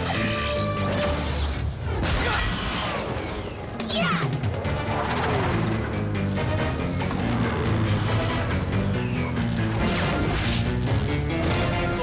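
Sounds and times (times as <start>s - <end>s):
dramatic background music: 0.0s - 12.0s
crash and explosion effects: 9.3s - 12.0s.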